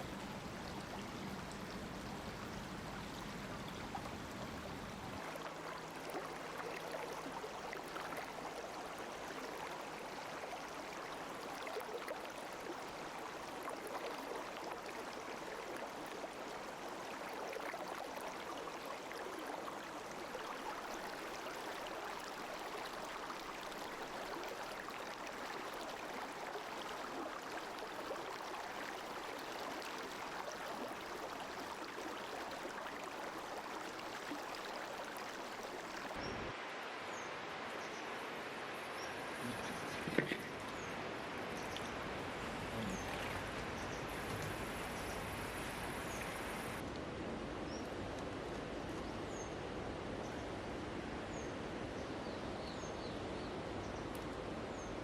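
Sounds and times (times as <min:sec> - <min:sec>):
river flowing: 0:00.0 - 0:55.0.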